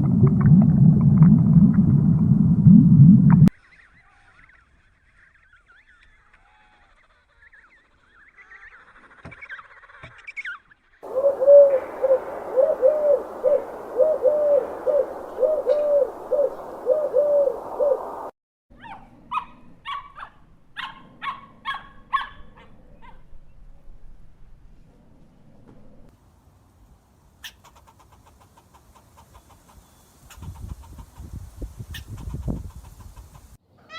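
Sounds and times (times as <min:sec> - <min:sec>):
animal hooting calls: 0:11.0 - 0:18.3
sharp chirping calls: 0:11.0 - 0:18.3
steady background noise: 0:11.0 - 0:18.3.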